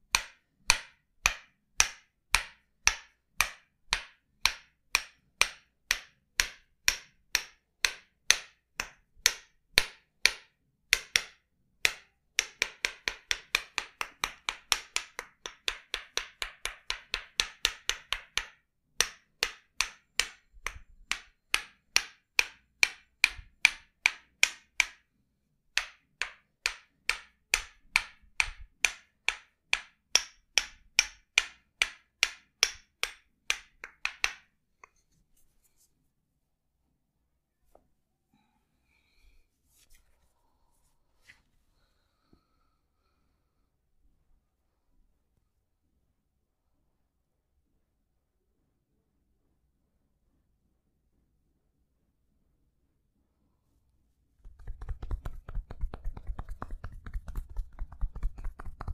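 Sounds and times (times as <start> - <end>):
wooden mallet tapping wooden wedge: 0.0 - 35.0, 54.4 - 58.9.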